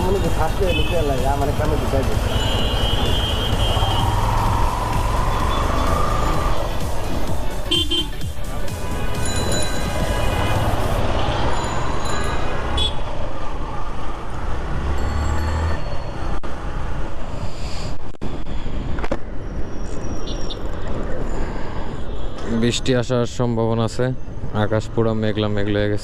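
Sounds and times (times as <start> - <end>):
road traffic: 0.0 - 26.0
car horn: 0.6 - 1.2, 2.2 - 4.2, 7.6 - 11.6, 12.6 - 13.1.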